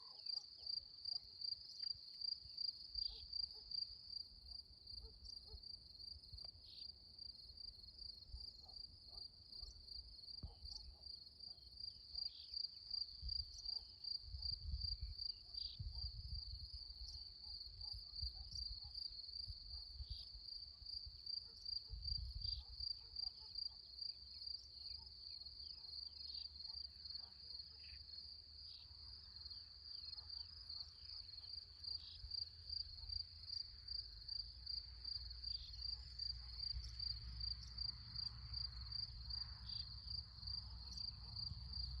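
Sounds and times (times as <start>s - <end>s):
crickets chirping: 0.0s - 42.0s.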